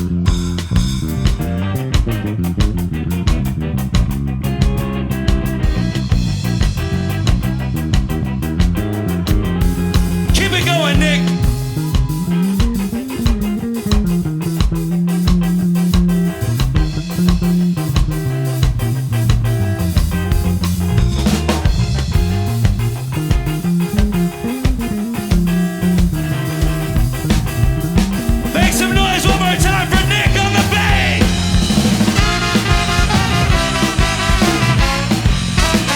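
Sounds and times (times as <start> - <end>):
bass guitar line: 0.0 - 35.9
drum kit: 0.0 - 35.9
guitar: 0.0 - 35.9.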